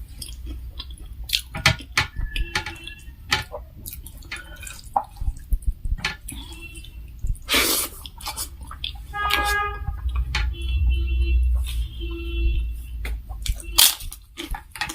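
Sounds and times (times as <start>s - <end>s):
chewing: 0.0s - 10.3s, 13.3s - 14.9s.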